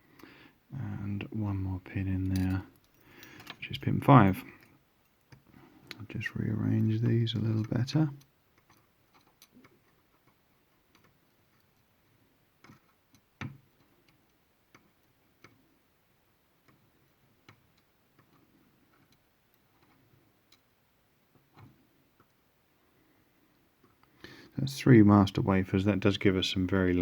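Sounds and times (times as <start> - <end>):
small metal pins clicking in a tray: 6.7 - 11.9.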